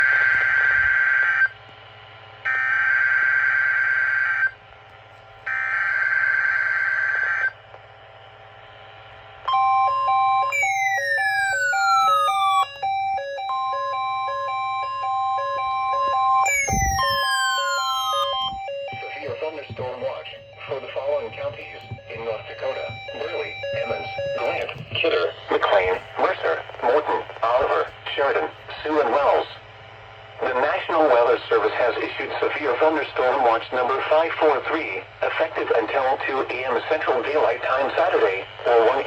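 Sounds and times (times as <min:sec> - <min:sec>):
electronic alert tone beeps: 0:09.5 - 0:25.1.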